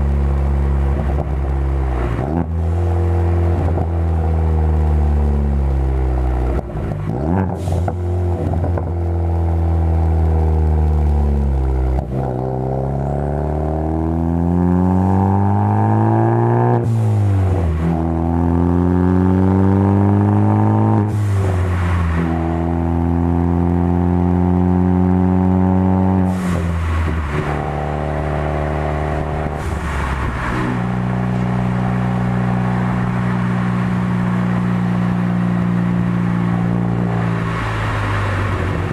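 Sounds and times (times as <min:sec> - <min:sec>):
car engine revving through gears: 0:00.0 - 0:38.9
exhaust crackles: 0:00.0 - 0:38.9.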